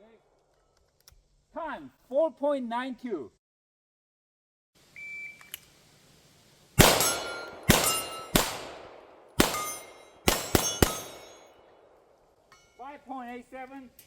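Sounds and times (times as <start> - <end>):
steel target plate ringing: 6.8 - 8.5, 9.4 - 11.6, 12.5 - 12.8
pistol shots: 6.8 - 12.0.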